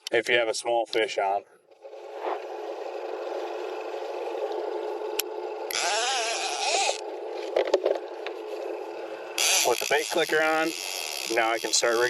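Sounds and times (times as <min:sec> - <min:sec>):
boat motor: 0:01.6 - 0:12.0
water noise: 0:01.7 - 0:12.0
fishing reel rapid clicking: 0:05.7 - 0:07.0, 0:09.4 - 0:12.0.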